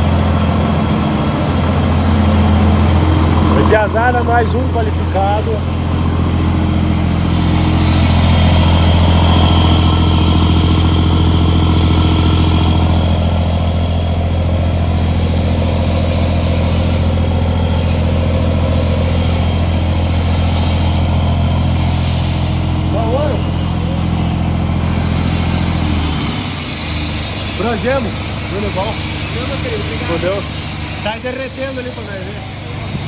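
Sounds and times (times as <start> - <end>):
diesel truck engine idling: 0.0 - 33.0.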